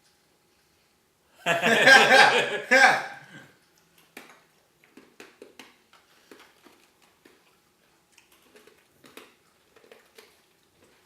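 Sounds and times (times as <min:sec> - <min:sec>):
person chewing candy: 0:03.6 - 0:11.0.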